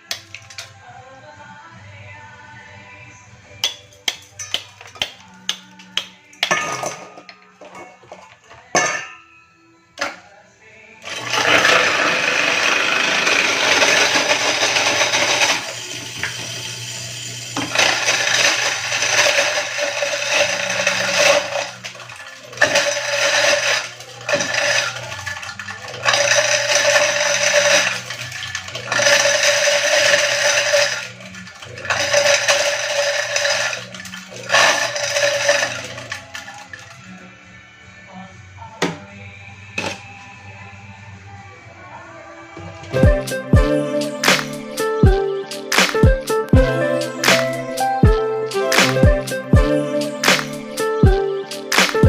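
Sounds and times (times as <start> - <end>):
ice rattling and grinding: 11.0 - 37.0
ice crusher motor humming: 11.0 - 43.6.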